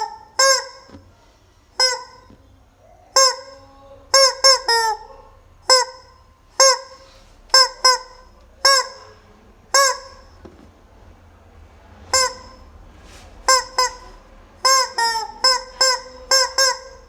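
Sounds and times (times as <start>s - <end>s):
rubber chicken toy squawking: 0.0s - 1.0s, 1.8s - 2.4s, 3.1s - 10.4s, 12.1s - 12.7s, 13.5s - 17.0s.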